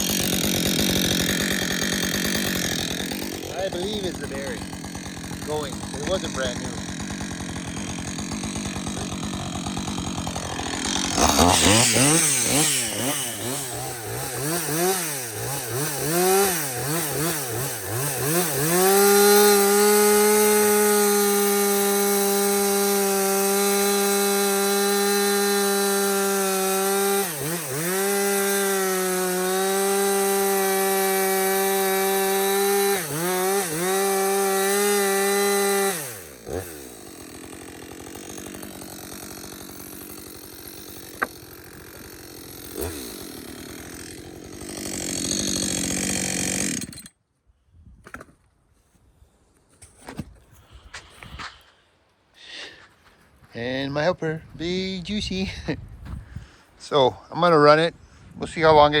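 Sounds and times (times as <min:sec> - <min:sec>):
chainsaw revving: 0:00.0 - 0:47.1.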